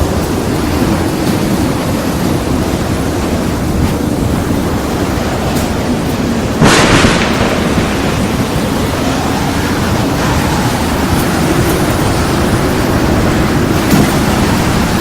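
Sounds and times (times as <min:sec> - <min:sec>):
heavy rain: 0:00.0 - 0:15.0
burst of rushing noise: 0:04.0 - 0:15.0.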